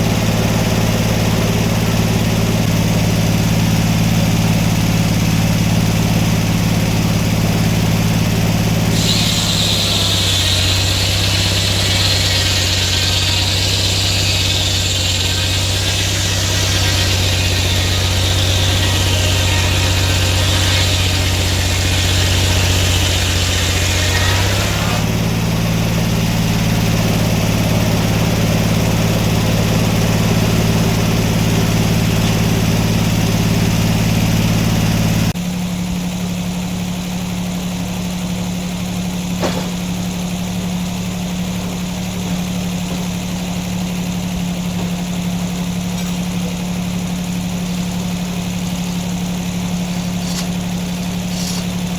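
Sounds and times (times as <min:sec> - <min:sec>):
sawmill engine running: 0:00.0 - 0:51.9
saw blade cutting log: 0:07.4 - 0:35.4, 0:39.4 - 0:40.0, 0:41.2 - 0:51.9.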